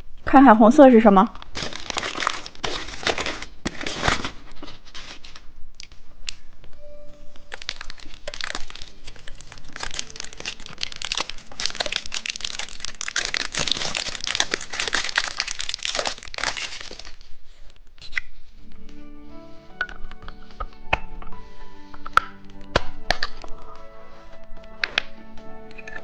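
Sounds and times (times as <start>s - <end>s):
candy wrapper crinkling: 1.3s - 5.9s, 7.3s - 18.2s, 22.1s - 25.1s.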